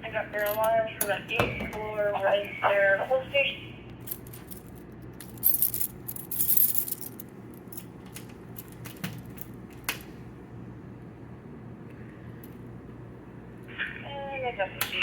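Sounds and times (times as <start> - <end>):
steady low hum: 0.0 - 15.0
metallic jangles: 4.0 - 7.9.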